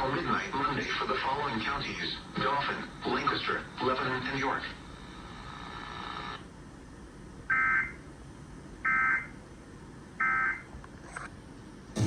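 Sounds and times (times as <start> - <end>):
harsh digital buzzing bursts: 2.4 - 6.4.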